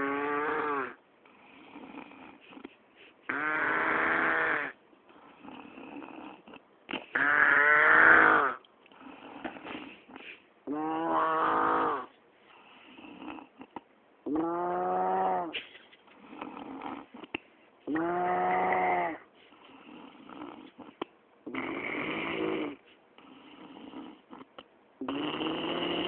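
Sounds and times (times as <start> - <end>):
person snoring loudly: 0.0 - 2.6, 3.3 - 9.8, 10.7 - 12.1, 14.3 - 15.6, 17.9 - 19.2, 21.5 - 26.0
quiet breathing: 1.2 - 3.3, 8.8 - 10.7, 12.0 - 13.8, 19.1 - 21.1.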